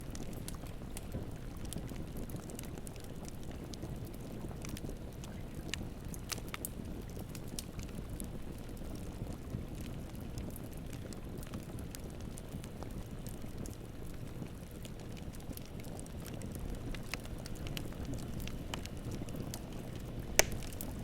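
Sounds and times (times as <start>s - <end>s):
campfire crackling and popping: 0.0s - 21.0s.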